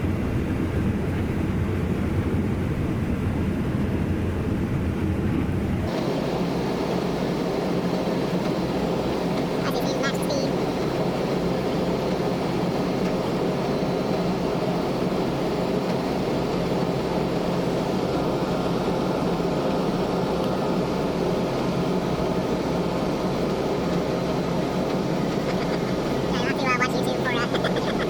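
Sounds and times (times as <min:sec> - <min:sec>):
combine harvester drone: 0:00.0 - 0:28.0.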